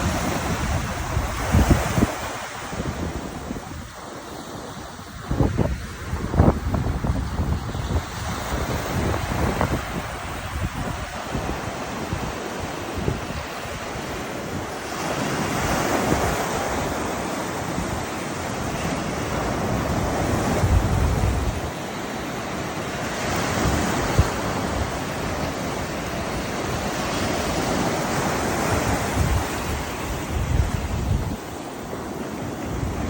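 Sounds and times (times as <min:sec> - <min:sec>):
ocean surf breaking: 0:00.0 - 0:33.0
wind rumbling on microphone: 0:00.0 - 0:33.0.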